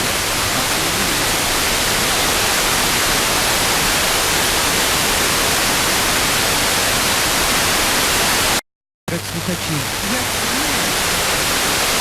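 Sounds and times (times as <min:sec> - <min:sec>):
radio static hiss: 0:09.1 - 0:12.0.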